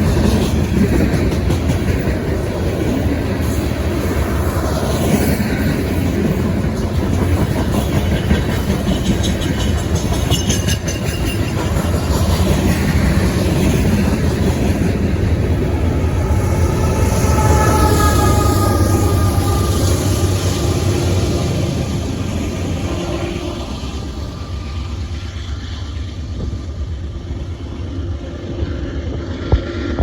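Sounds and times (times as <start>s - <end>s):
freight train rumbling on rails: 0.0s - 30.0s
high wheel squeal: 16.2s - 21.6s.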